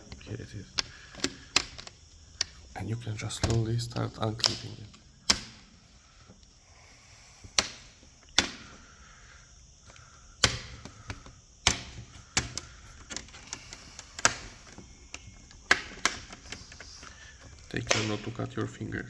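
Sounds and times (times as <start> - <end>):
plastic clicks and creaks: 0.0 - 6.6, 7.4 - 9.1, 9.8 - 19.0
plastic clips snapping: 0.0 - 6.6, 7.4 - 9.0, 9.8 - 18.9.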